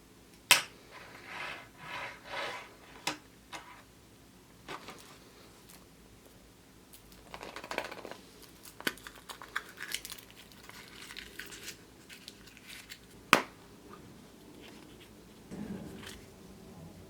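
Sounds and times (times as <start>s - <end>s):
foil wrapper crinkling: 7.0s - 13.2s.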